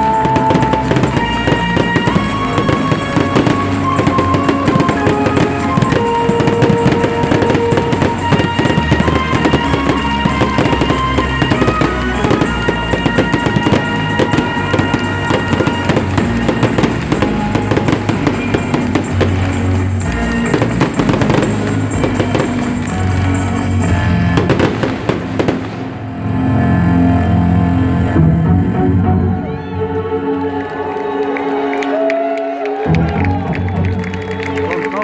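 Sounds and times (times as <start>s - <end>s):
fireworks bangs and crackles: 0.0s - 26.4s
loud music: 0.0s - 32.0s.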